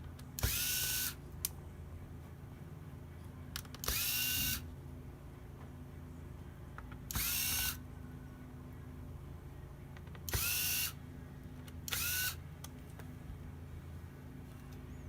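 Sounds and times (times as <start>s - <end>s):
electric screwdriver whining: 0.4s - 1.2s, 7.1s - 7.8s, 10.3s - 11.0s, 11.9s - 12.4s.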